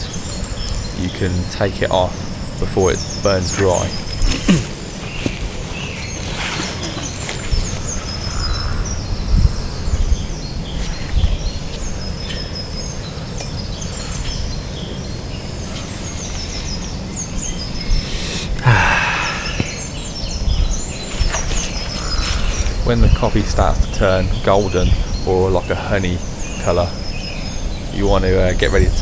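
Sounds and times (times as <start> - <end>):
birds chirping: 0.0 - 29.0
steady low rumble: 7.3 - 12.4.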